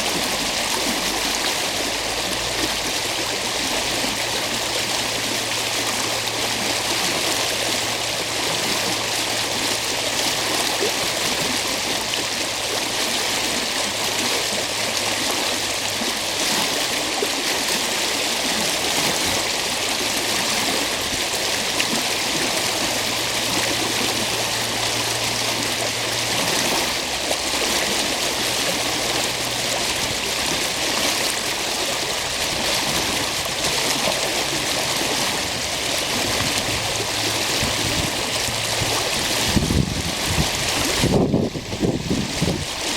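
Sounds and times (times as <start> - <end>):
stream water rushing and gurgling: 0.0 - 42.9
wind buffeting microphone: 36.1 - 42.9.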